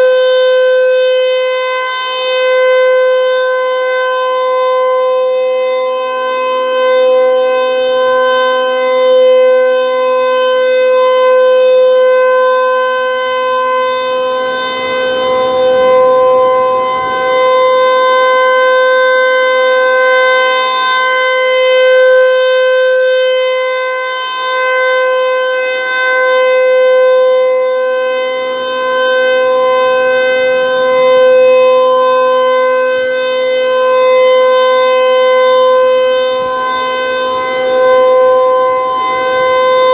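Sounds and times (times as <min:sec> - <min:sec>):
outdoor warning siren: 0:00.0 - 0:39.9.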